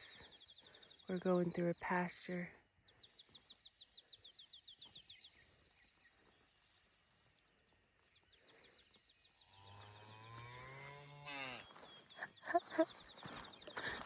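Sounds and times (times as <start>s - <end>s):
cow mooing: 9.6s - 11.7s.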